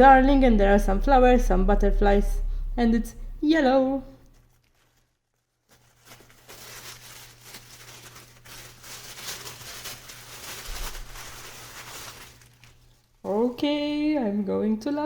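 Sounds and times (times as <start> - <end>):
paper and packaging rustling: 4.2 - 13.5.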